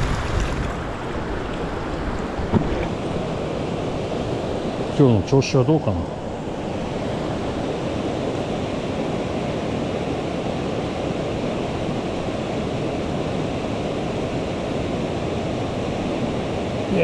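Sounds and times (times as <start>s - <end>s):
stream water rushing: 0.0s - 17.0s.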